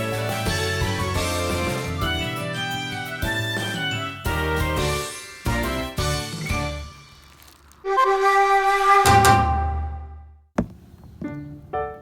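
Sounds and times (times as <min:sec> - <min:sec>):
sharp knock: 0:10.6 - 0:11.3.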